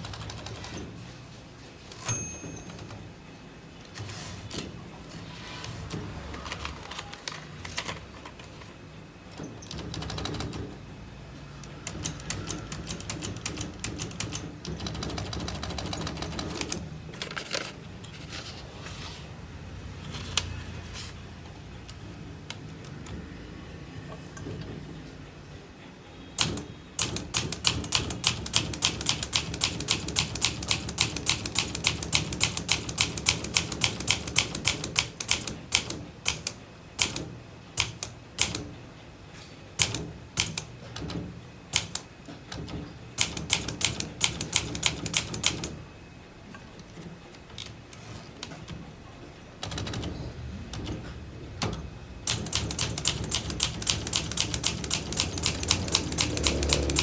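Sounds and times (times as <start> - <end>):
typewriter key strikes: 1.9 - 3.0, 11.6 - 16.8, 26.4 - 38.7, 39.8 - 45.8, 49.6 - 57.0.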